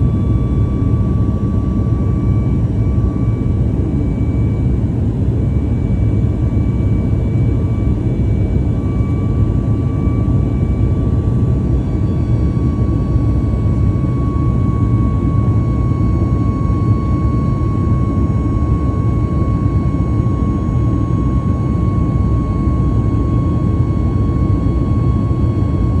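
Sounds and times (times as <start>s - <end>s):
aircraft engines rumbling: 0.0s - 26.0s
steady engine whine: 0.0s - 26.0s.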